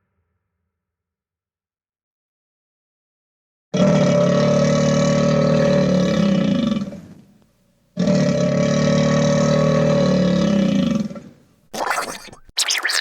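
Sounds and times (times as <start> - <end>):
cartoon growling roar: 3.8 - 7.1, 8.0 - 13.0.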